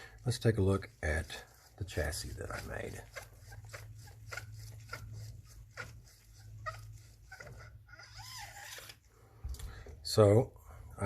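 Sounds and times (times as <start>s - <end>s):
short squeaks: 6.3s - 9.1s.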